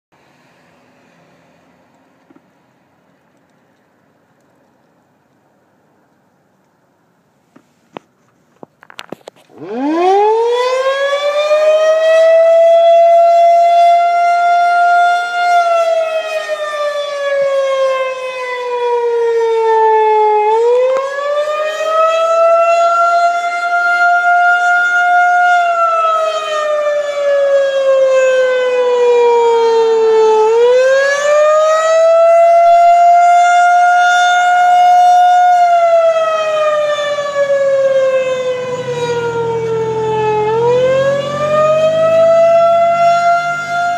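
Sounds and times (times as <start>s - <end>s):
tornado siren wailing: 8.9s - 43.9s.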